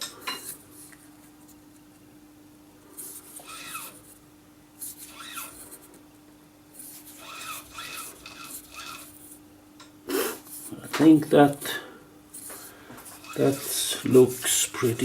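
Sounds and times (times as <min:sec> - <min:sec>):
metal scraping on metal: 0:03.1 - 0:04.0, 0:04.9 - 0:05.6, 0:06.8 - 0:09.2, 0:12.4 - 0:15.0
metal lathe humming: 0:03.3 - 0:04.0, 0:05.0 - 0:05.6, 0:06.8 - 0:09.2, 0:13.0 - 0:15.0.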